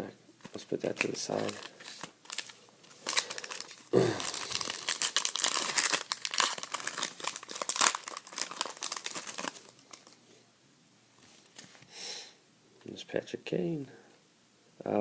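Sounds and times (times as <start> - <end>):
wrapper crinkling and tearing: 0.5 - 10.2.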